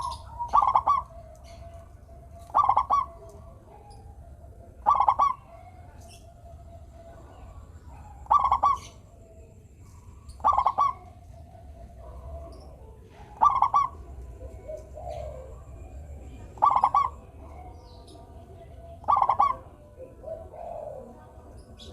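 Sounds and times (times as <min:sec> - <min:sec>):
dove cooing: 0:00.0 - 0:21.9.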